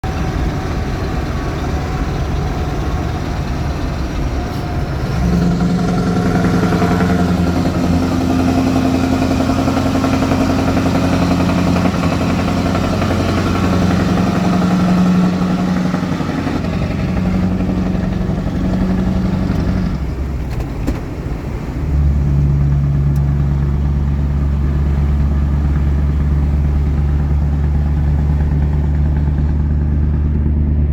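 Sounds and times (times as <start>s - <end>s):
exhaust popping and crackling: 0.0s - 30.9s
truck engine revving: 0.0s - 30.9s.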